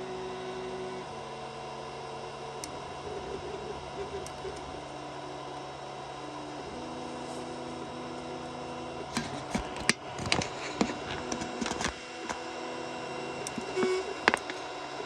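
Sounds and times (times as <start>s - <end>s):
fan hum: 0.0s - 15.0s
stepper motors whining: 0.0s - 15.0s
sharp clicks and rattles: 13.4s - 14.7s.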